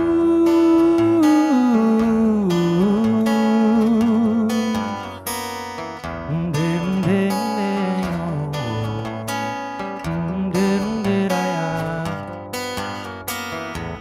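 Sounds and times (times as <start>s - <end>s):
acoustic guitar strumming: 0.0s - 14.0s.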